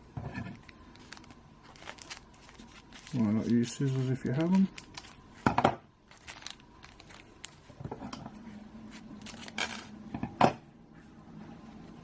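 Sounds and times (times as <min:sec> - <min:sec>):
plastic packet crinkling: 0:00.6 - 0:07.8, 0:08.9 - 0:10.0.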